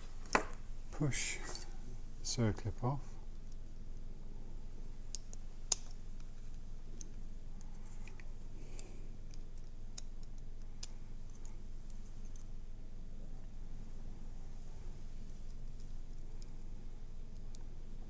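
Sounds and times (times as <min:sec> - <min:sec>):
metallic clicks and taps of lock: 0:05.1 - 0:06.3.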